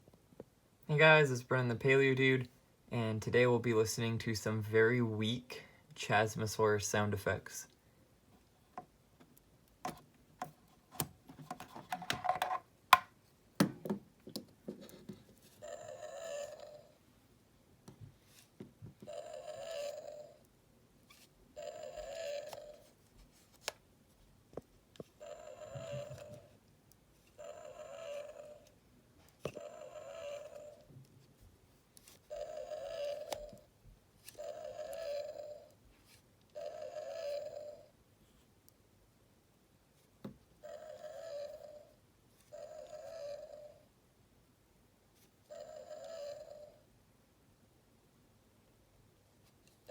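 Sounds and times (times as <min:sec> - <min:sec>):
toy dinosaur electronic roar: 0:15.6 - 0:17.0, 0:19.1 - 0:20.5, 0:21.6 - 0:22.9, 0:25.2 - 0:26.5, 0:27.4 - 0:28.8, 0:29.6 - 0:30.9, 0:32.3 - 0:33.6, 0:34.3 - 0:35.8, 0:36.6 - 0:37.9, 0:40.6 - 0:41.9, 0:42.5 - 0:43.8, 0:45.5 - 0:46.8.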